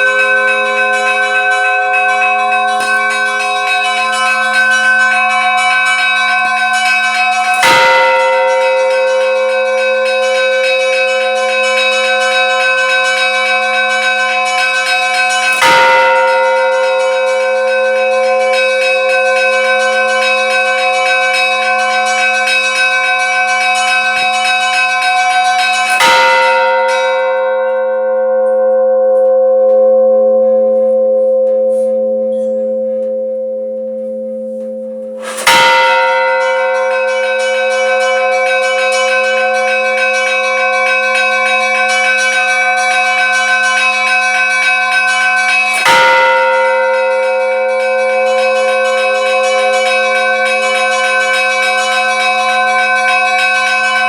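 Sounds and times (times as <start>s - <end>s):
large church bell ringing: 0.0s - 54.0s.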